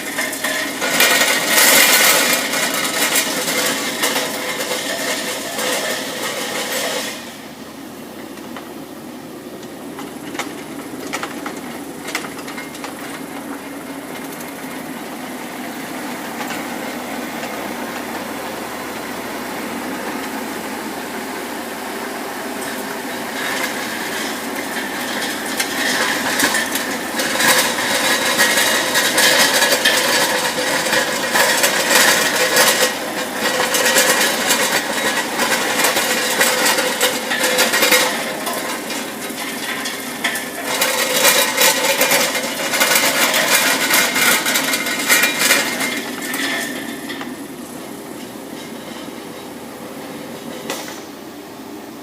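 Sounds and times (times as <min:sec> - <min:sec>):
metal clanks and knocks: 0:00.0 - 0:07.4, 0:09.6 - 0:15.1, 0:22.6 - 0:51.1
excavator engine whine: 0:01.4 - 0:52.0.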